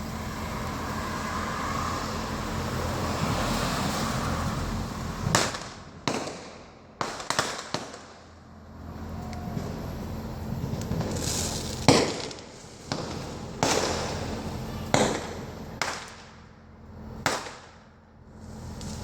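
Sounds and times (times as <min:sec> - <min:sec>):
fireworks bursting with echoing rumble: 0:05.2 - 0:08.4, 0:09.6 - 0:17.9.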